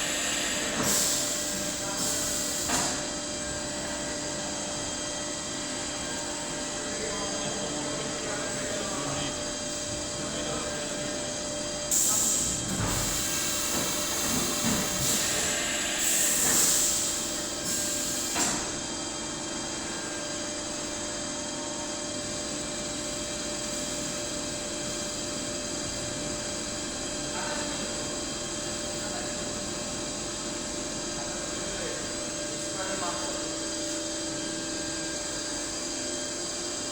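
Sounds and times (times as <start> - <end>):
lathe humming and whining: 0.0 - 36.9.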